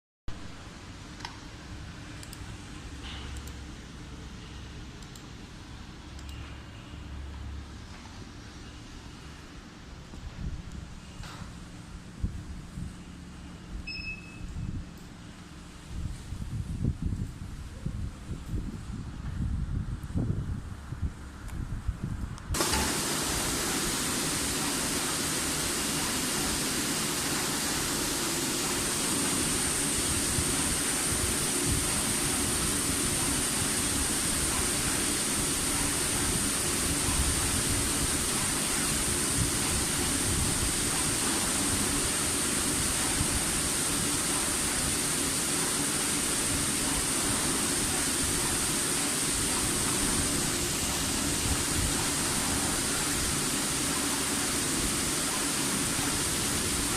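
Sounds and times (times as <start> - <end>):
cutting machine hissing: 22.6 - 56.9.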